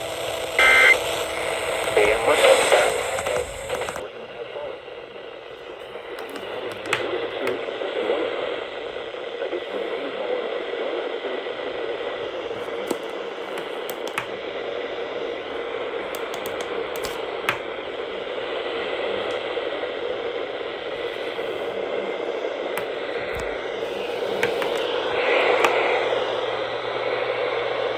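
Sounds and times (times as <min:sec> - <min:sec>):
sharp clicks and crackles: 0:00.0 - 0:04.0, 0:16.1 - 0:17.7
radio static hiss: 0:00.0 - 0:27.9.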